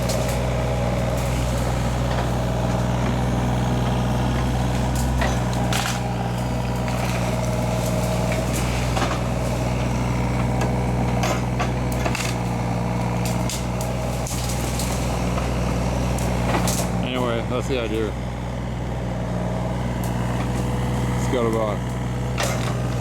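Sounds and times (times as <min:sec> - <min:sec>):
wood cracking and snapping: 0:00.0 - 0:17.0, 0:21.8 - 0:23.0
heavy diesel engine running: 0:00.0 - 0:23.0.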